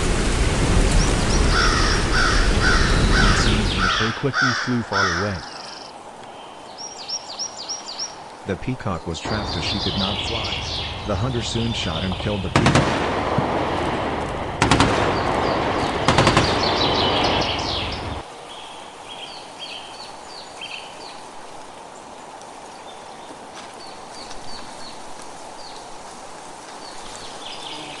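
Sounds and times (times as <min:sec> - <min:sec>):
faint outdoor background: 0:00.0 - 0:28.0
birds chirping: 0:00.8 - 0:25.9, 0:26.8 - 0:28.0
gunshot bursts: 0:12.4 - 0:18.1.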